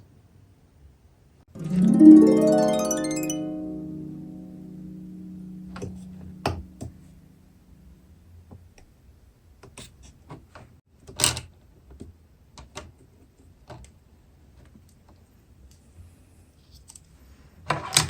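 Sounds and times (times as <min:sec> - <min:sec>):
background music note: 0:01.5 - 0:08.1.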